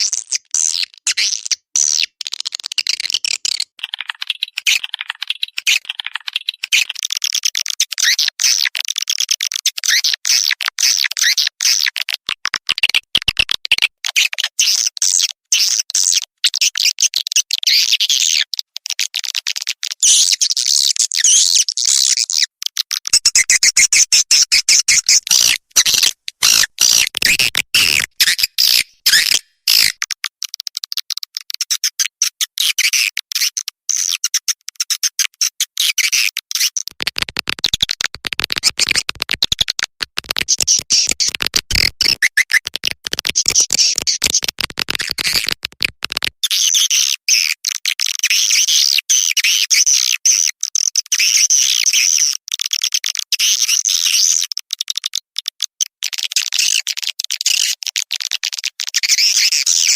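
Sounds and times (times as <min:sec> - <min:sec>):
swiftlet chirps and twitters: 0:23.1 - 0:30.0, 0:40.4 - 0:42.7.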